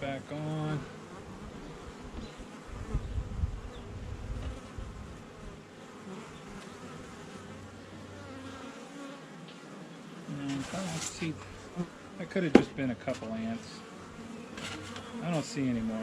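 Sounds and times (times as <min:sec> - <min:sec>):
honey bees buzzing: 0:00.0 - 0:16.0
hive box bumps: 0:01.3 - 0:03.3, 0:10.3 - 0:16.0.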